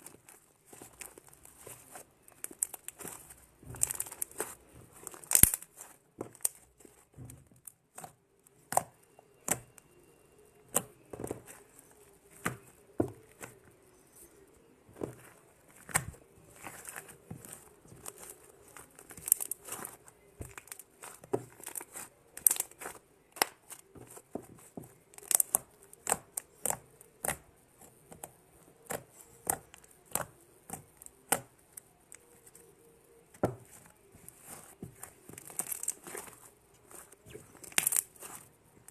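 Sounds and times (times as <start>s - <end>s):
slime popping and crackling: 0.0s - 9.8s, 15.1s - 28.3s, 33.5s - 38.9s.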